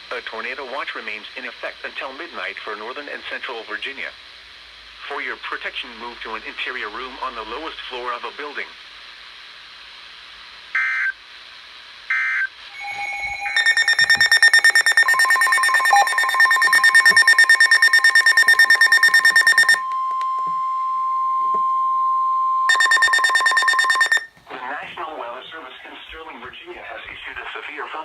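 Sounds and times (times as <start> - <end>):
buzzy data burst: 12.7 - 19.8, 22.7 - 24.2
pulsing electronic alarm beep: 12.7 - 24.3
steady single-pitch warning tone: 12.7 - 24.3.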